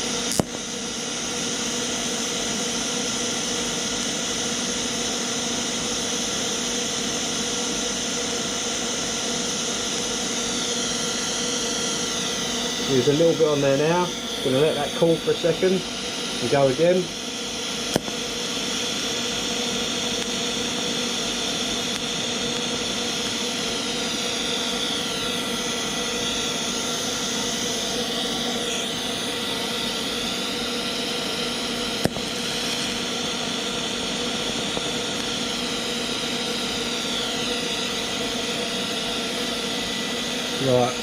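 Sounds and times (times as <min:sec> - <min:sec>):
welding arc buzzing hiss: 0:00.0 - 0:41.0
sharp click: 0:00.3 - 0:00.6.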